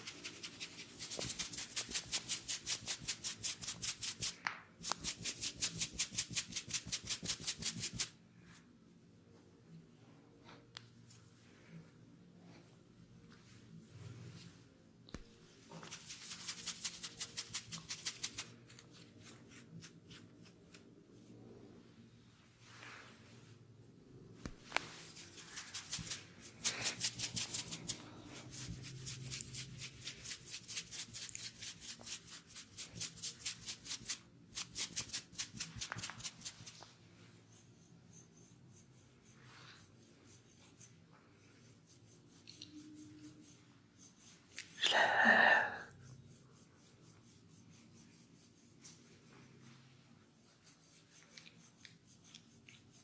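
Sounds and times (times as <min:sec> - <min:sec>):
faint scratches: 0:00.0 - 0:08.7, 0:24.4 - 0:44.8, 0:45.9 - 0:53.0
hands swishing through hair: 0:24.4 - 0:36.8.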